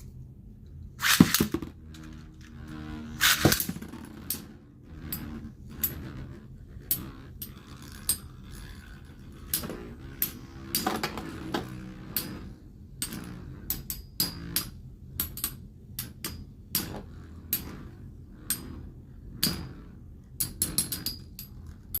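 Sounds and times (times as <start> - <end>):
spinning tops whirring: 0.9 - 22.0
spinning tops clashing metallic clicks: 1.0 - 2.2.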